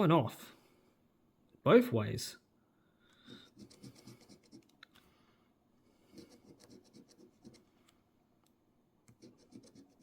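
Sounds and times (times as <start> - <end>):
coin scratching lottery ticket: 9.2 - 10.0.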